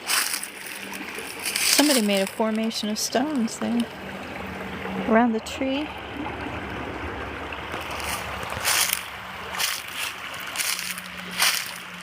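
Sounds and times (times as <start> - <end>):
footsteps crunching dry leaves: 0.0 - 2.3, 7.9 - 12.0
low rustling of leaves: 0.0 - 5.1, 5.9 - 12.0.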